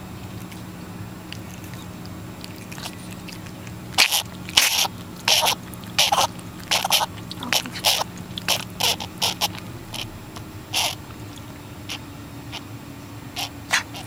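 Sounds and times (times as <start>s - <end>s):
dog breathing noisily: 0.0s - 14.0s.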